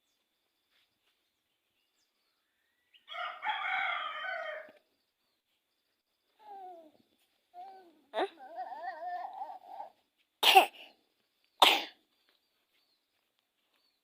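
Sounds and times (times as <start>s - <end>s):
rooster crowing: 3.0s - 4.8s.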